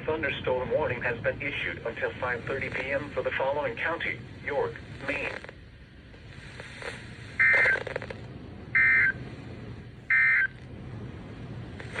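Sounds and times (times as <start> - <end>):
warbling two-tone data buzz: 7.4 - 8.1, 8.8 - 9.2.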